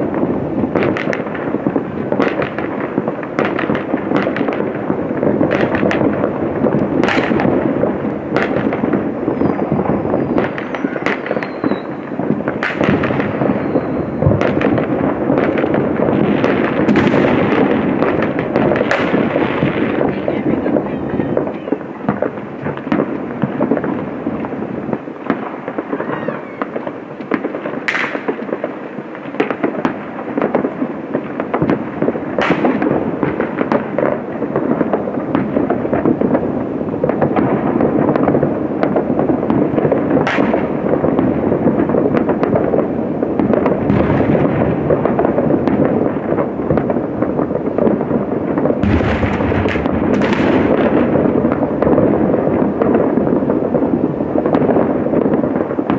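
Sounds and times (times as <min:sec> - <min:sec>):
fireworks crackling: 0:00.0 - 0:55.9
fireworks sharp bangs: 0:00.0 - 0:55.9.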